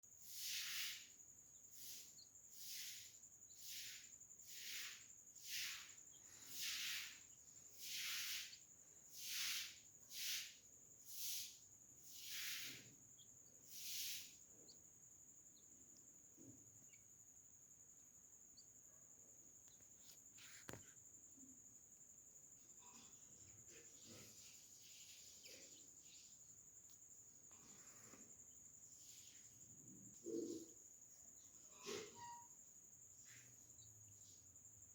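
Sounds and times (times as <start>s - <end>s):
insect trill: 0.1s - 34.9s
short hissing bursts: 0.2s - 14.6s
tiny high chirps: 0.2s - 21.5s.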